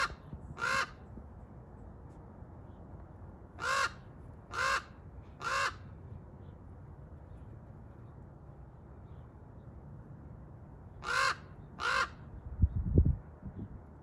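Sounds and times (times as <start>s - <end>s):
raven calling: 0.0s - 1.0s, 3.6s - 5.9s, 11.0s - 12.2s.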